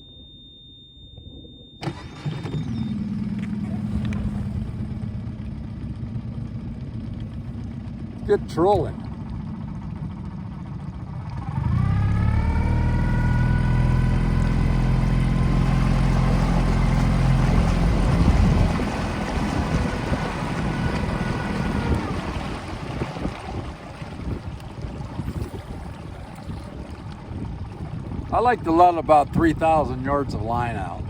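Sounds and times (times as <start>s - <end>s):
boat engine with rising whine: 0.0s - 31.0s.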